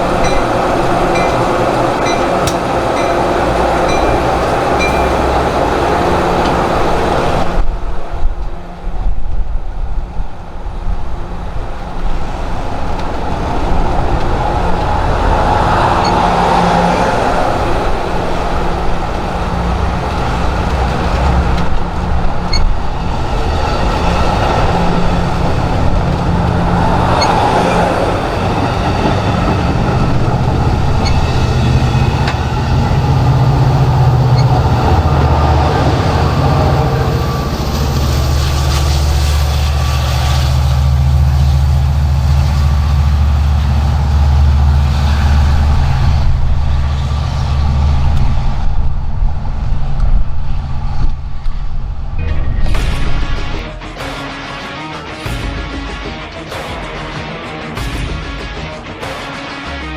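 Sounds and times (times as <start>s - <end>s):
train wheels rolling: 0.0s - 53.6s
diesel locomotive engine drone: 0.0s - 59.9s.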